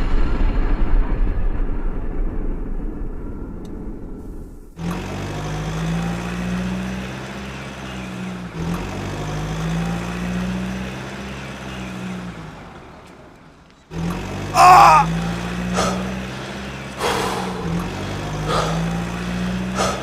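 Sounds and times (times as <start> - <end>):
truck engine droning: 4.8 - 20.0.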